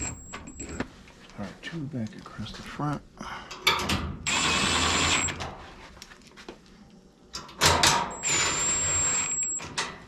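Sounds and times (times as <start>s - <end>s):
power driver motor whine: 4.3s - 5.4s, 8.2s - 9.6s.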